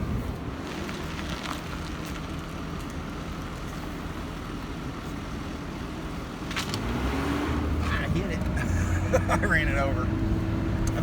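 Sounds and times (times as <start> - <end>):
car engine and road rumble: 0.0 - 11.0.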